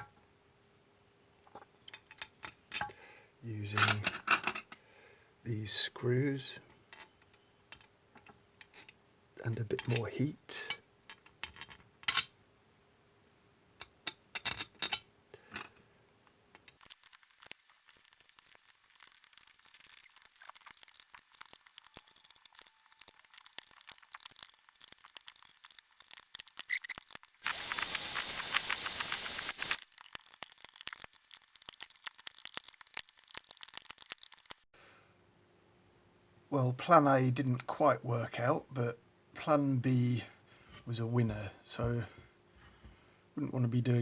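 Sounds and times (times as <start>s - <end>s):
metal clicks of tools and screws: 1.4s - 2.9s, 3.8s - 4.8s, 6.9s - 9.0s, 9.8s - 10.1s, 10.7s - 12.4s, 13.8s - 15.8s, 29.2s - 34.6s
loud steady hiss: 27.4s - 29.9s.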